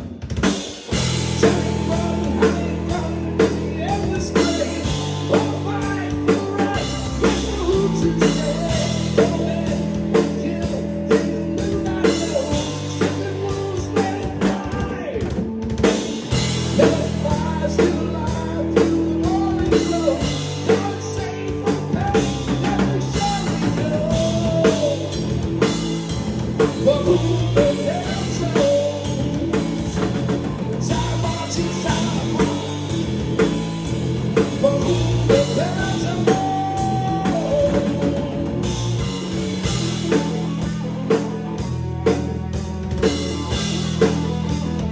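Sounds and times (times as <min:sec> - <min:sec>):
drum kit beat: 0:00.0 - 0:44.9
guitar: 0:00.0 - 0:44.9
person singing: 0:01.3 - 0:15.5, 0:16.6 - 0:25.8, 0:26.6 - 0:33.0, 0:34.4 - 0:38.8.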